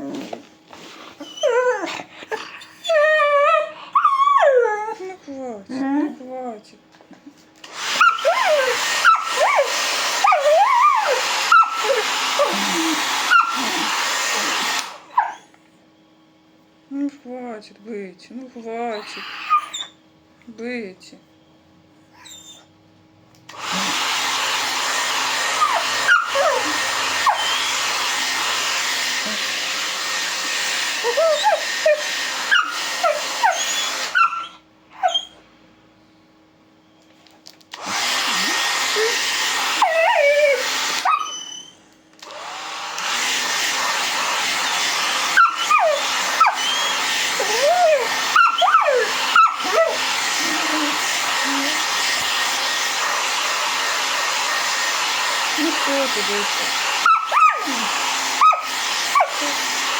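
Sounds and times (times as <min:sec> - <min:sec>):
dog whining: 0:00.0 - 0:06.6, 0:07.8 - 0:15.6, 0:18.8 - 0:20.0, 0:22.1 - 0:22.8, 0:25.3 - 0:29.6, 0:30.5 - 0:35.4, 0:38.0 - 0:41.8, 0:43.0 - 0:53.0, 0:56.9 - 0:59.9
hair dryer blowing: 0:07.6 - 0:15.2, 0:23.5 - 0:34.6, 0:37.7 - 0:59.9.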